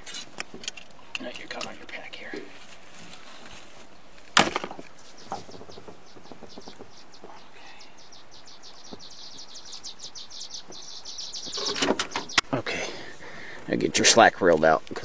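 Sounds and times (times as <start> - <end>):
sharp knock with rattle: 4.4 - 4.8.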